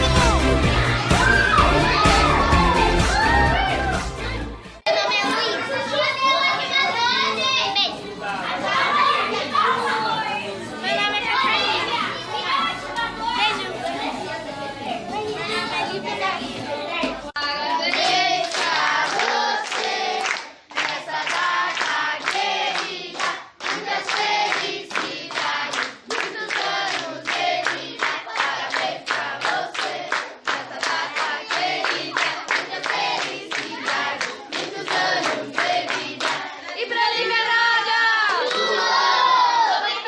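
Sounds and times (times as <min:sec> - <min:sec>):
group singing: 0:17.4 - 0:40.0
people clapping along: 0:17.4 - 0:40.0.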